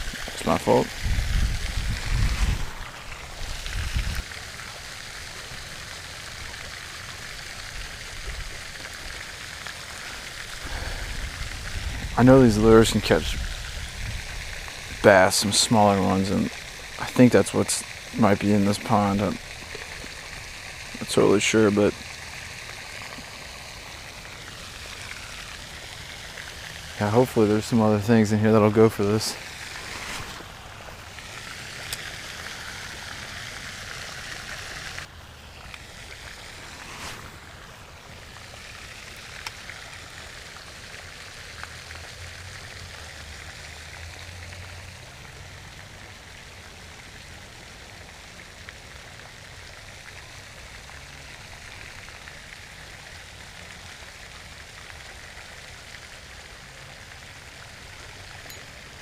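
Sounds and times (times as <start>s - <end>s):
outdoor background hiss: 0.0s - 59.0s.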